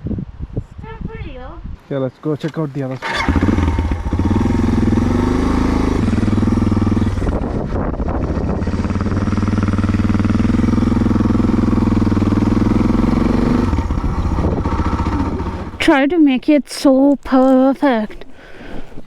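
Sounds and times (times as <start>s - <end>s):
single-cylinder motorcycle engine: 2.5s - 15.9s.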